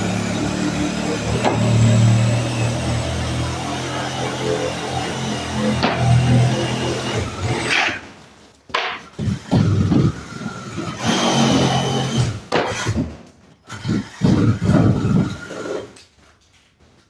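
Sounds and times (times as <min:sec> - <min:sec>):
power tool running in bursts: 0:00.0 - 0:08.0, 0:09.2 - 0:13.0
rough scraping of wall material: 0:00.0 - 0:17.0.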